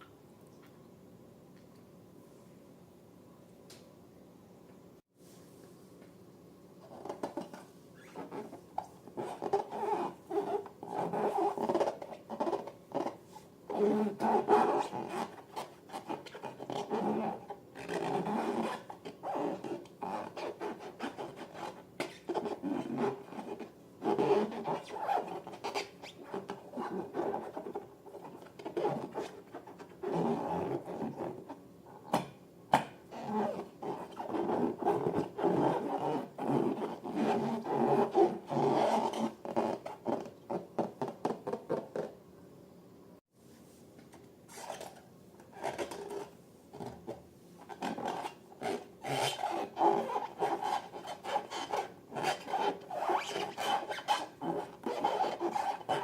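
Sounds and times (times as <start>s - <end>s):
rubber balloons rubbing: 7.0s - 31.6s, 33.1s - 42.1s, 45.6s - 56.0s.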